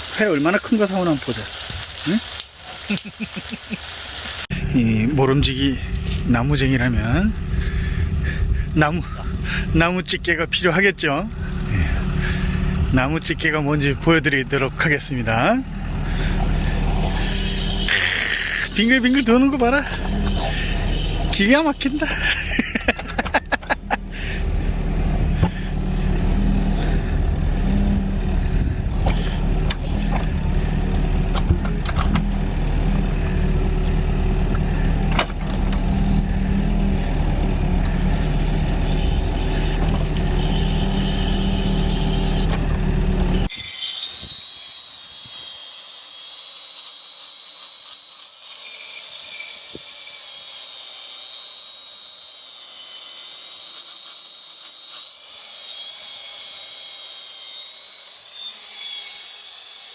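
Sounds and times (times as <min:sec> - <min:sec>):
machine engine running: 0:04.5 - 0:43.5.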